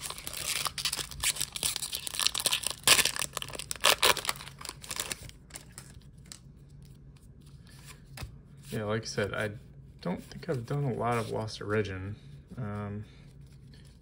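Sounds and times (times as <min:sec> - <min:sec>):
foil wrapper tearing and crinkling: 0:00.0 - 0:06.4.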